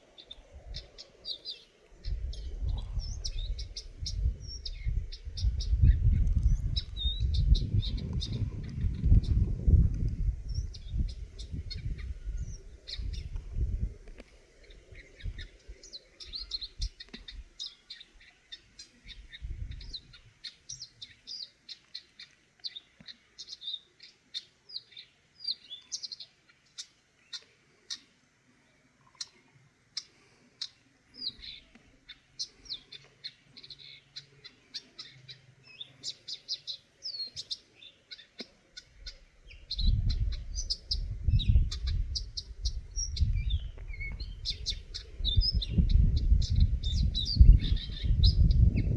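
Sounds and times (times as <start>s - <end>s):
bird chirping: 0.1s - 13.8s, 30.0s - 48.9s.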